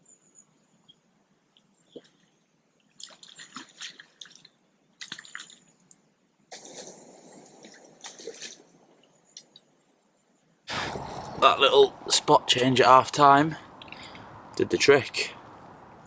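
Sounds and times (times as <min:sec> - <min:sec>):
water splashing and dripping: 0:03.0 - 0:05.7, 0:06.5 - 0:09.6, 0:10.7 - 0:16.0.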